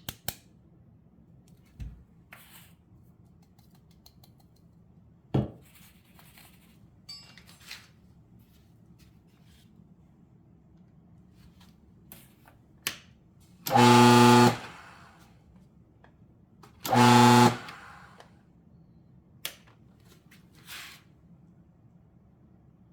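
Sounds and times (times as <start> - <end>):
coffee grinder motor humming: 13.7 - 15.2, 16.8 - 18.3.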